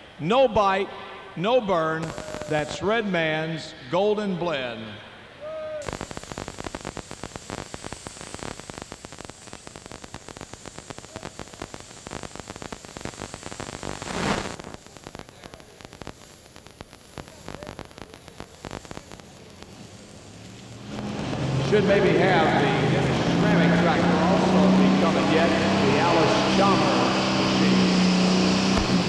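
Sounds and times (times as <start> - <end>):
crackling hissing noise: 0.0 - 29.0.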